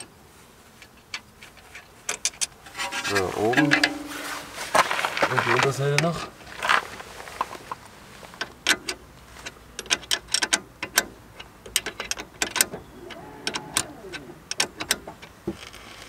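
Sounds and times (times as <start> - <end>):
hand tools clicking on metal: 0.8 - 4.1, 8.4 - 15.4.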